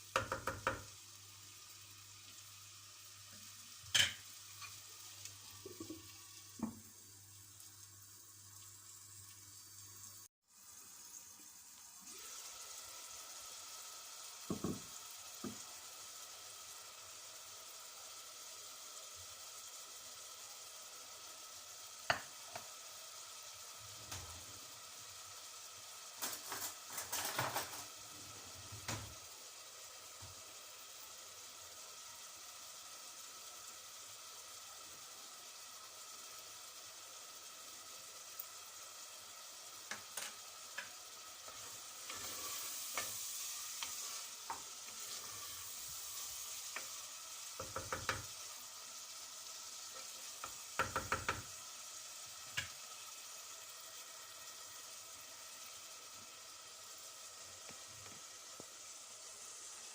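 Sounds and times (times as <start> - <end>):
food sizzling in a pan: 0.0 - 59.9
utensil scraping a pan: 41.5 - 45.9.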